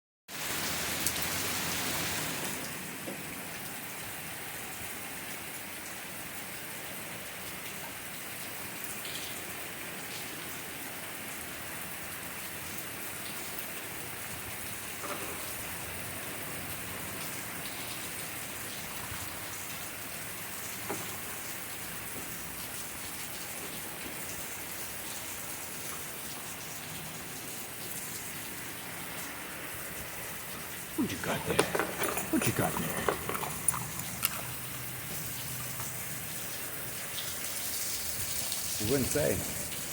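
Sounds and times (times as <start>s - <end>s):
steady rain falling: 0.3s - 39.9s
raindrops ticking: 12.6s - 39.9s.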